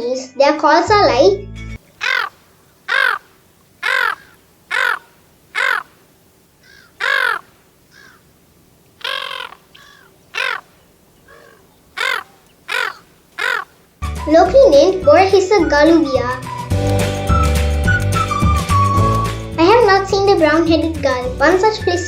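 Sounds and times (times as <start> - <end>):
gull calls: 1.9 - 13.8.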